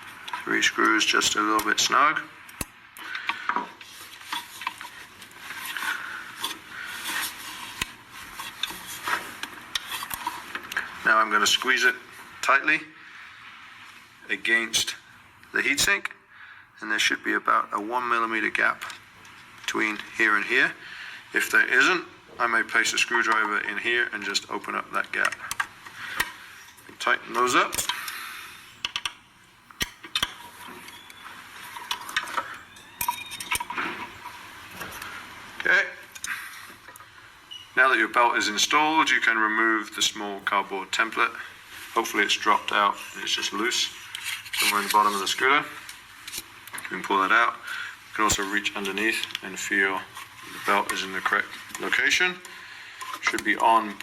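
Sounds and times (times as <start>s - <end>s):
tool clicks and taps: 28.8s - 30.4s.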